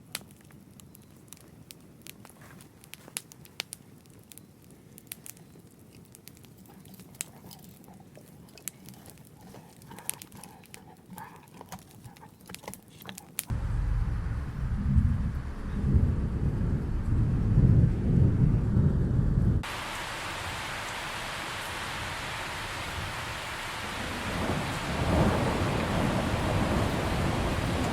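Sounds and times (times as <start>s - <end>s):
thunder rumble: 13.5s - 27.9s.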